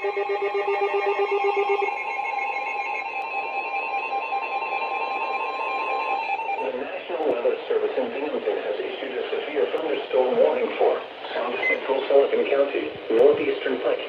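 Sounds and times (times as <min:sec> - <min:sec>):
rapidly pulsing low beep: 0:11.5 - 0:12.0.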